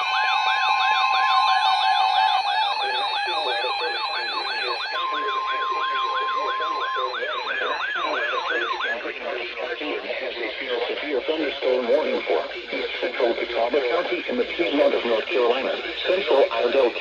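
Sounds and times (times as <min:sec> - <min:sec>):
siren-like alarm sweep: 0:00.0 - 0:09.3
steady alarm tones: 0:00.0 - 0:17.0.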